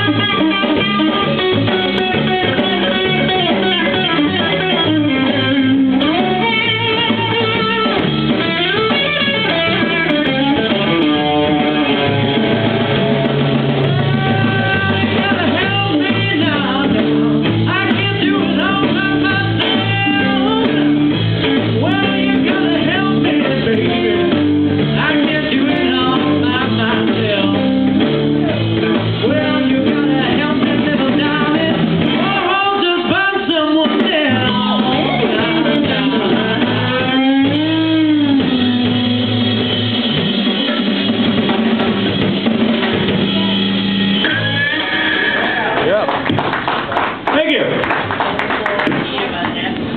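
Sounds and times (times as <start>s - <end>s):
drum kit: 0.0s - 49.9s
guitar: 0.0s - 49.9s
person singing: 13.8s - 39.0s.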